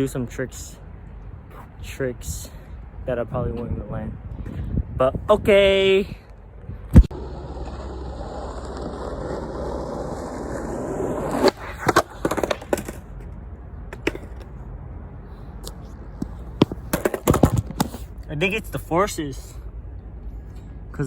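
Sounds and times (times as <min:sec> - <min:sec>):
skateboard wheels rolling: 0:06.9 - 0:14.6, 0:16.2 - 0:18.1
skateboard clacking on ground: 0:07.2 - 0:14.5, 0:16.2 - 0:18.0.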